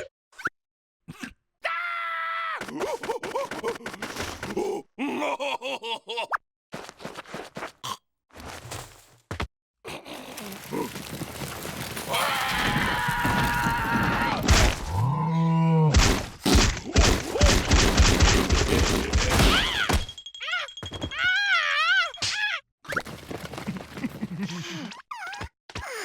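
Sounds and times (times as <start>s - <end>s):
low groaning voice: 9.9s - 11.1s, 12.1s - 16.0s
cartoon thumps and knocks: 15.9s - 20.2s
squeaky cartoon voices: 19.1s - 23.0s.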